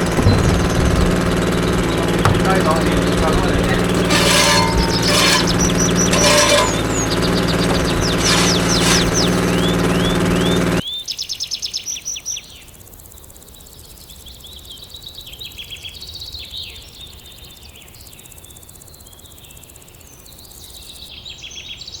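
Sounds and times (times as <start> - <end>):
loud engine running: 0.0 - 10.8.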